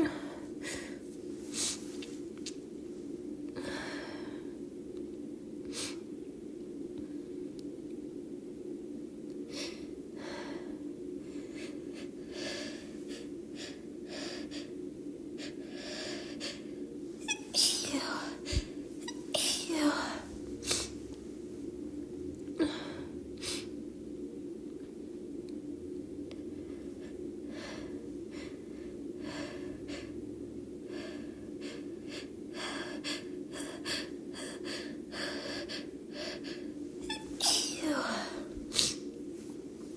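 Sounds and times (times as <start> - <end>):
steady low hum: 0.0 - 39.9.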